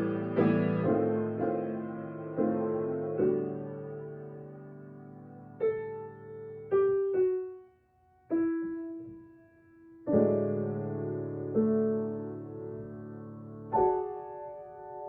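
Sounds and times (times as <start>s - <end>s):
slow soft piano: 0.0s - 15.0s.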